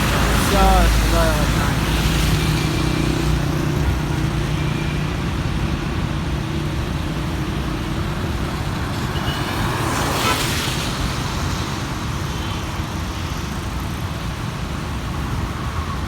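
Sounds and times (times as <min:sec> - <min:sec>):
vehicle engine hum: 0:00.0 - 0:08.0
traffic hiss on wet road: 0:00.0 - 0:16.0.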